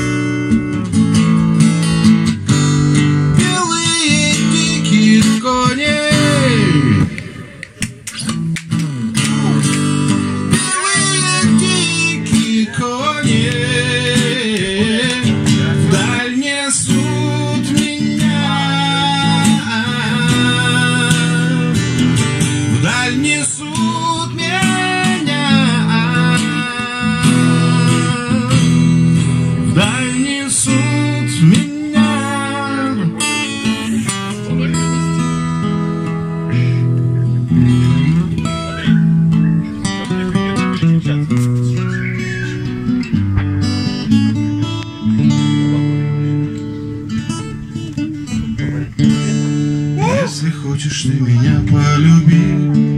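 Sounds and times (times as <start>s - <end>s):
strummed acoustic guitar music: 0.0s - 52.9s.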